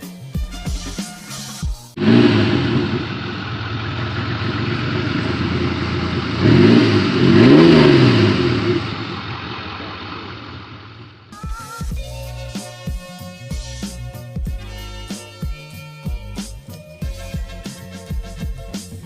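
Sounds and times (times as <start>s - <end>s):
old truck engine revving: 2.0s - 11.3s.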